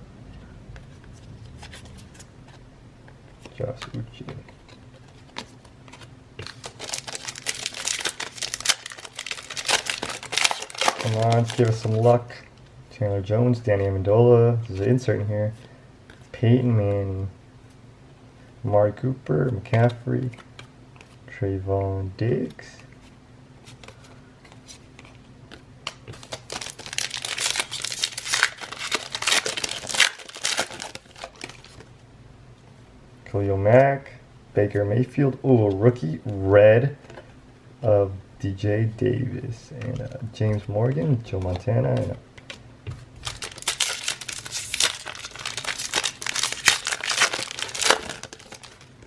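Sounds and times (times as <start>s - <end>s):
foil wrapper crinkling and tearing: 6.4s - 12.2s, 26.1s - 31.8s, 43.2s - 49.0s.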